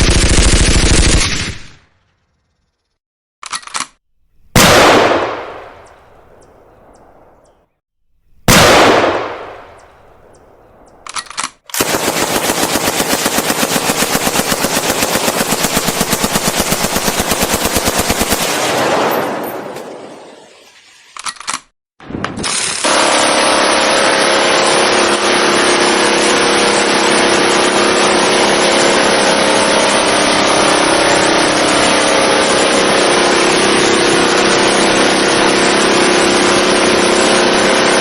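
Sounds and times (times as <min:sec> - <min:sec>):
rapid automatic gunfire: 0:00.0 - 0:01.7, 0:11.8 - 0:19.3, 0:22.8 - 0:38.0
gun mechanical clicking: 0:10.9 - 0:11.8.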